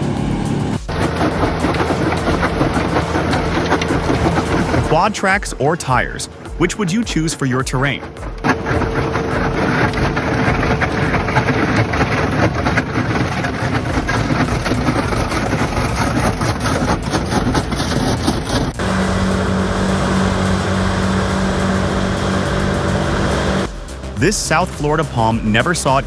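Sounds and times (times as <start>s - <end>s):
wood chipper shredding wood: 0.0s - 5.2s, 7.9s - 23.8s
heavy equipment engine drone: 0.0s - 6.5s, 8.0s - 24.4s.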